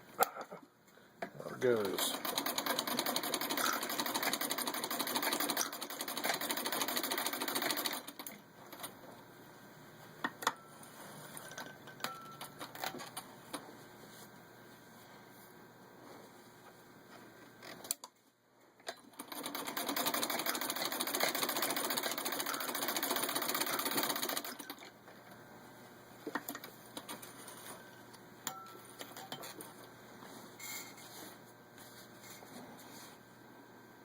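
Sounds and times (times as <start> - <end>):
sewing machine rapid clatter: 1.9 - 8.3, 19.1 - 24.8.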